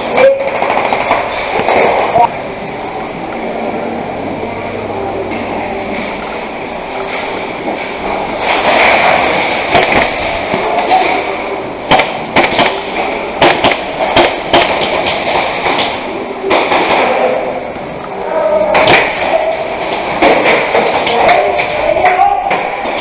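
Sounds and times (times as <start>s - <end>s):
airsoft guns firing: 0.3s - 2.2s, 11.9s - 17.3s.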